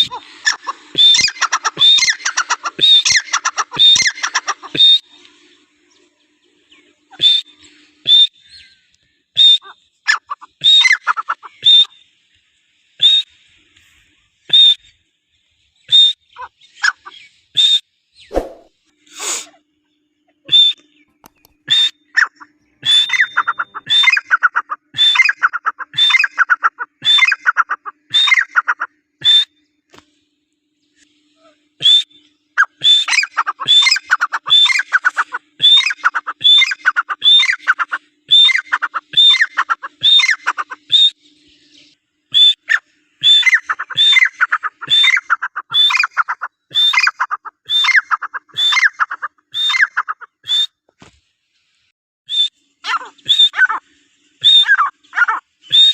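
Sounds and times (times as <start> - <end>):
partridge calling: 0.0 - 5.0, 9.6 - 11.9, 16.4 - 17.3, 21.3 - 29.5, 32.6 - 41.1, 42.4 - 50.7, 52.8 - 53.8, 54.4 - 55.9.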